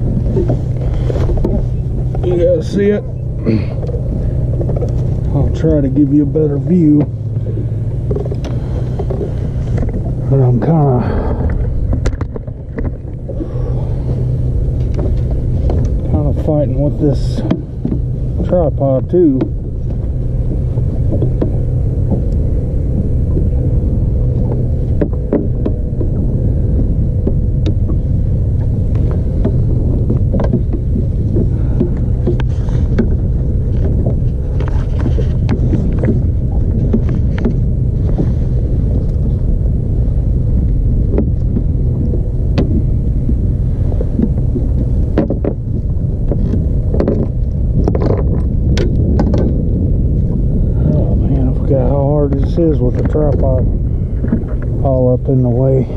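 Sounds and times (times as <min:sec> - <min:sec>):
faint hum: 0:00.0 - 0:55.9
low rumble: 0:00.0 - 0:55.9.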